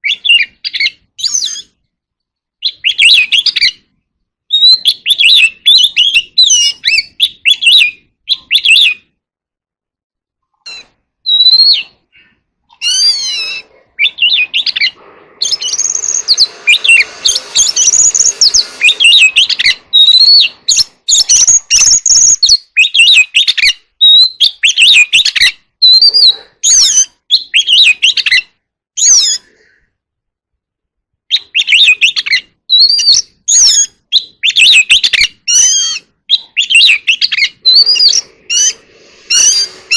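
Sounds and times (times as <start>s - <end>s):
bird whistled song: 0.0s - 1.8s, 2.6s - 3.9s, 4.5s - 9.2s, 10.7s - 29.6s, 31.3s - 39.9s
bird scratchy chattering: 12.7s - 23.5s, 33.0s - 39.9s.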